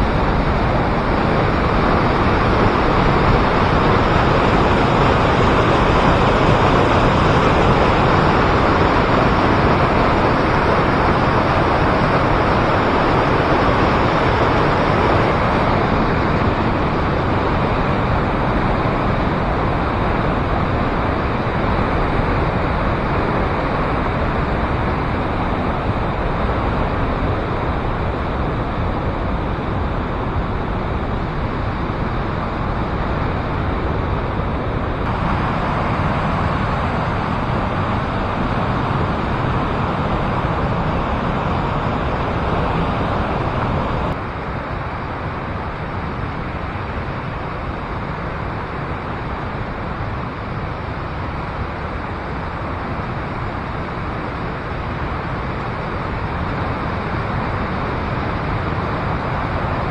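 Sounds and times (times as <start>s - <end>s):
waterfall rushing: 31.3s - 59.9s.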